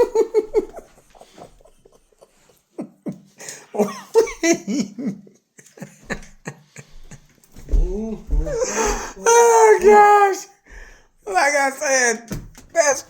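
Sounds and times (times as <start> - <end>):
man laughing: 0.0 - 10.2.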